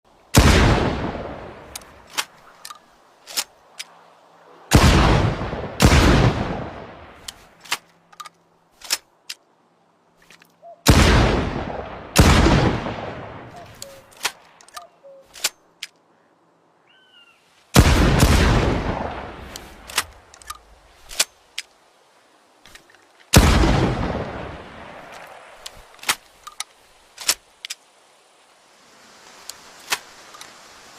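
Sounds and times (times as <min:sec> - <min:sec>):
shotgun blasts: 0:00.3 - 0:01.6, 0:04.7 - 0:07.0, 0:10.9 - 0:13.6, 0:17.8 - 0:19.6, 0:23.3 - 0:25.1.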